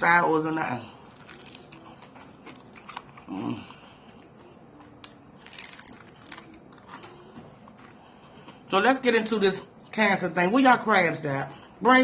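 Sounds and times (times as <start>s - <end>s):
crunchy bites and chewing: 0.8s - 8.6s.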